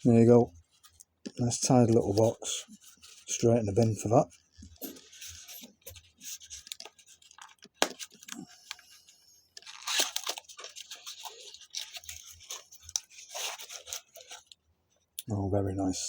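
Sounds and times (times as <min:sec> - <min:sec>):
packaging torn and crinkled: 0:05.0 - 0:08.8, 0:09.6 - 0:14.6.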